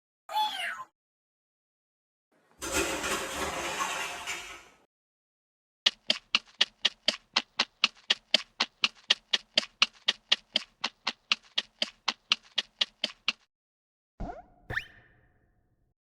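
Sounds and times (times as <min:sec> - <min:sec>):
cartoon footsteps taps: 0:05.9 - 0:13.5.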